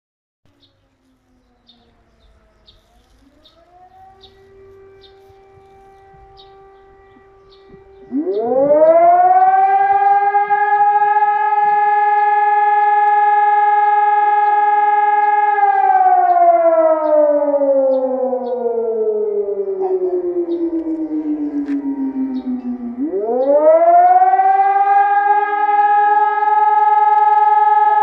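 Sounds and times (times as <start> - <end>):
civil defence siren wailing: 0.5 - 28.0.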